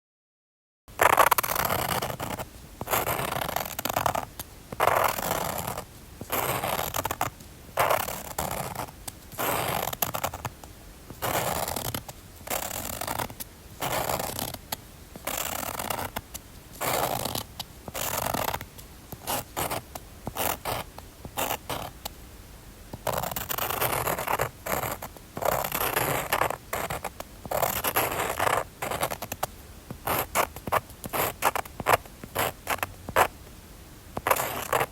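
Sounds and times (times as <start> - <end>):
drawing tool scratching on paper: 1.0 - 10.5, 11.2 - 14.6, 15.2 - 16.2, 16.8 - 22.0, 23.0 - 29.4, 30.0 - 33.3, 34.2 - 34.9.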